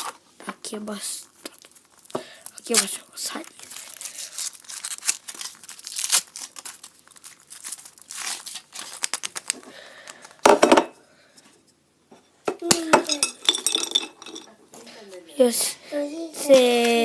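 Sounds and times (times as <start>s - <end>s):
wrapper crinkling and tearing: 1.3s - 10.4s.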